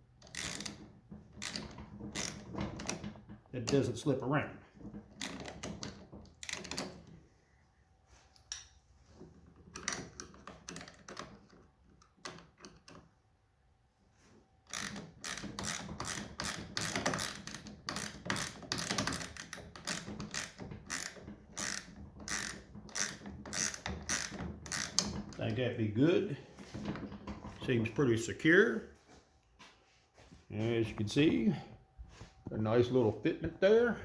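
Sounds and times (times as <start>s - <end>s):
ratchet wrench clicking: 0.3s - 0.8s, 14.7s - 25.1s.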